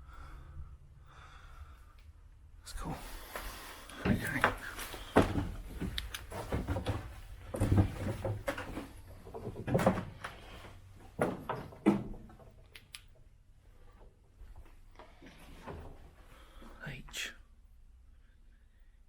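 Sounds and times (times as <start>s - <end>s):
footsteps in a tunnel: 3.0s - 11.4s.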